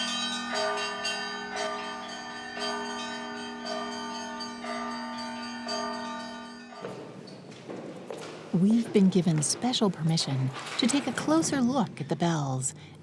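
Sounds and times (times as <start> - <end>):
church bells pealing: 0.0 - 7.2
large bell humming: 0.0 - 7.6.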